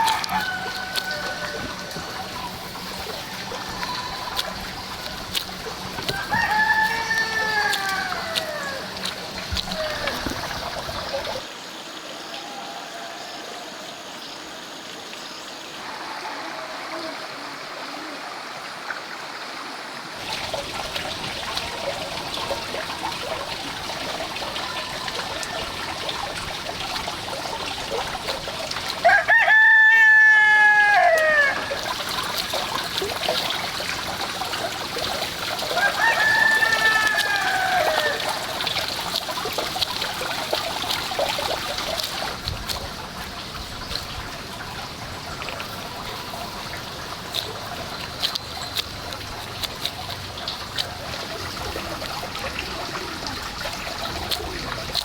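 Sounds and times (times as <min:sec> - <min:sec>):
rooster crowing: 0:00.0 - 0:02.2, 0:06.1 - 0:09.0, 0:29.0 - 0:31.8, 0:35.7 - 0:38.6.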